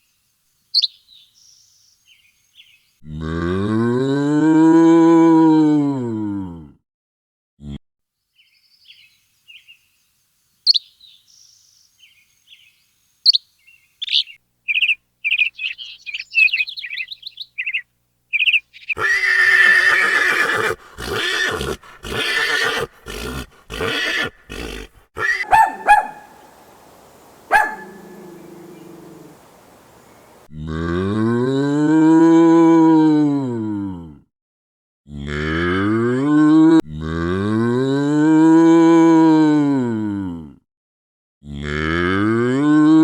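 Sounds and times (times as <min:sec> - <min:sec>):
small bird chirping: 0:00.7 - 0:02.8, 0:10.6 - 0:19.0, 0:24.5 - 0:30.5
horse whinnying: 0:19.0 - 0:26.6, 0:27.4 - 0:30.3.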